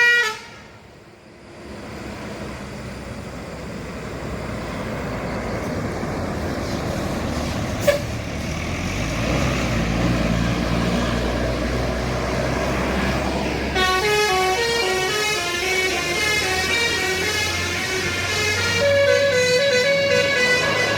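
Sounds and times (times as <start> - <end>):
bus engine rumble: 0.0 - 20.9
musical air horn tune: 13.8 - 20.9.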